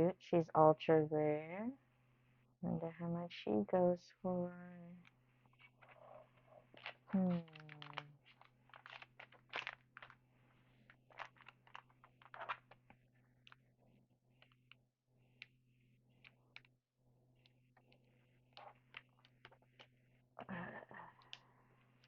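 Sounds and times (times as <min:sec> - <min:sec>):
trading cards clicking and crinkling: 0:05.4 - 0:13.6, 0:14.4 - 0:16.7, 0:17.4 - 0:20.0.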